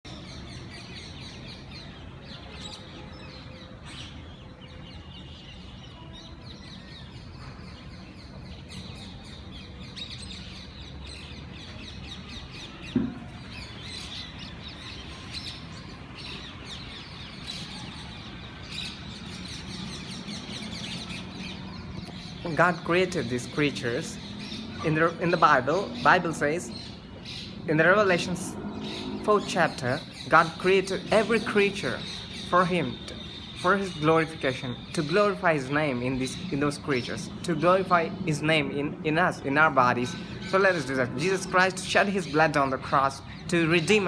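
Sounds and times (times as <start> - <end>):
parrots chirping: 9.9 - 38.3.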